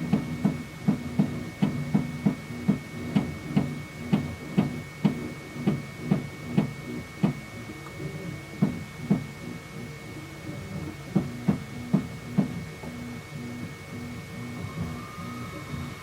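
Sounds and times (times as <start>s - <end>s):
sharp knocking from printer: 0.0s - 7.4s, 11.2s - 12.6s
stepper motors whining: 14.3s - 16.0s.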